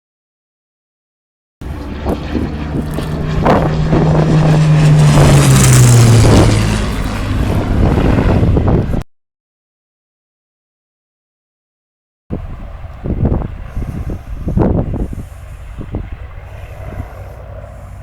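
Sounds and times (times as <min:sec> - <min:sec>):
propeller plane engine passing: 0:01.6 - 0:09.0, 0:12.3 - 0:18.0.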